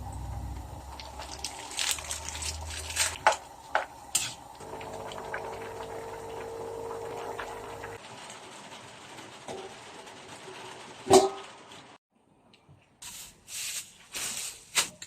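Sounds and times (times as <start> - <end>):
pot of curry bubbling: 0.1 - 11.5.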